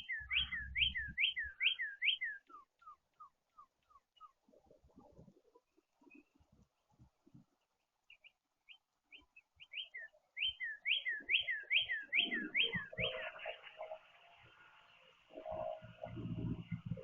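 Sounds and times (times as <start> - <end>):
songbird whistling downward notes: 0.0 - 3.3, 9.7 - 13.4.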